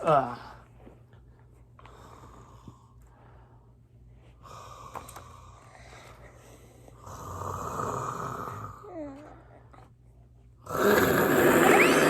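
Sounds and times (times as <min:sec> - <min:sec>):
person imitating snoring: 0:07.1 - 0:09.2, 0:10.7 - 0:12.0.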